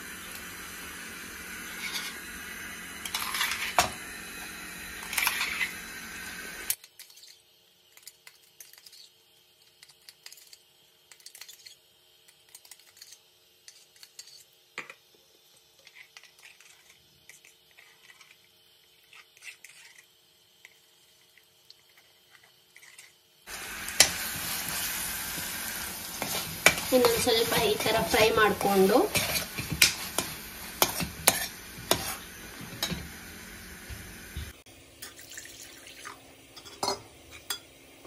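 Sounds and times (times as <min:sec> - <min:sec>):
paste sizzling in a pan: 0:00.0 - 0:38.0.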